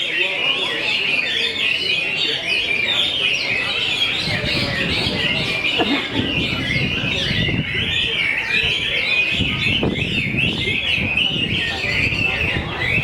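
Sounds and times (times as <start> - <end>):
chorus of birds singing: 0.0 - 13.0
murmur of crowd: 0.0 - 13.0.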